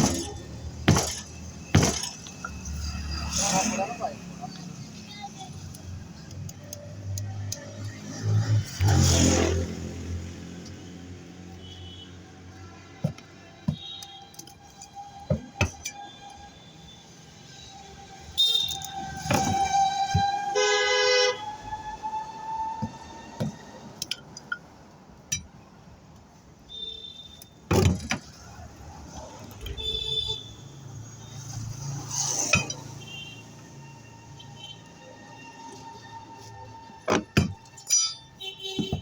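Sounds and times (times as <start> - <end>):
metal knocks and clanks: 0.0 - 3.0, 15.3 - 16.0, 19.0 - 20.5, 27.7 - 28.4, 37.0 - 39.0
vehicle horn: 18.3 - 21.7, 29.7 - 30.8, 38.4 - 39.0.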